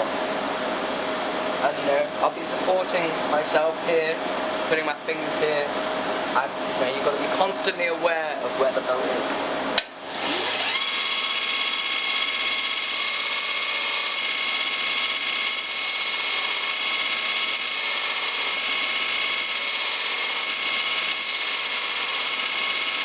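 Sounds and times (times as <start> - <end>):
belt grinder whining: 10.0 - 23.0
abrasive belt grinding steel: 10.1 - 23.0.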